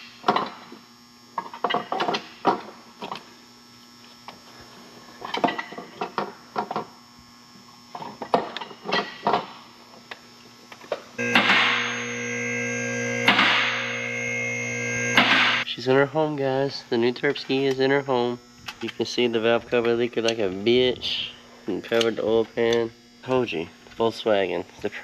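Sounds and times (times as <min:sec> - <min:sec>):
faint steady hum: 0:00.0 - 0:25.0
loud electrical hum with hiss: 0:00.0 - 0:25.0.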